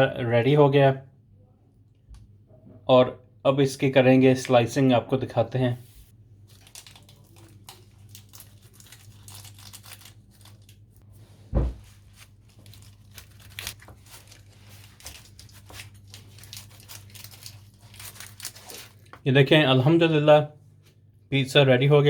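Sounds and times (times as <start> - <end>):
dull thump: 11.5 - 11.9.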